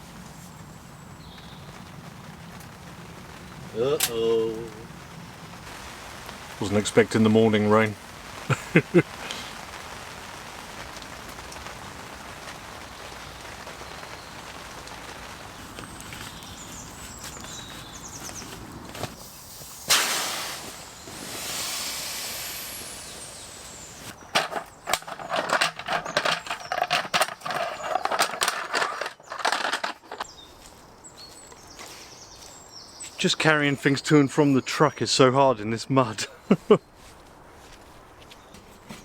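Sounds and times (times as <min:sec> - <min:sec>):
rain on tent fabric: 0:00.0 - 0:35.2, 0:36.0 - 0:39.0
loud rustle: 0:07.7 - 0:32.6.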